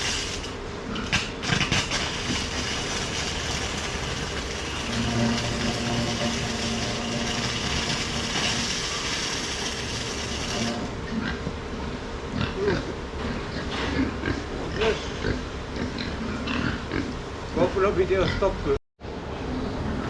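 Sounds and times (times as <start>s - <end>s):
engine-like running hum: 0.0s - 12.2s
pigs grunting: 12.3s - 17.2s.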